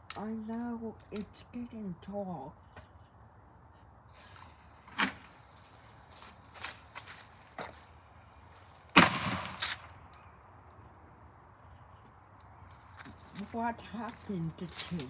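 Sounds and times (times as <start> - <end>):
short crack: 8.9 - 10.2
firecracker bang: 9.0 - 9.8.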